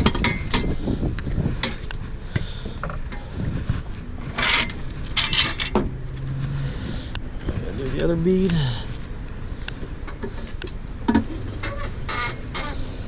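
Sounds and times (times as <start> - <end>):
tire machine clicks and knocks: 0.0 - 3.2, 9.7 - 12.8
low machine rumble: 0.0 - 13.0.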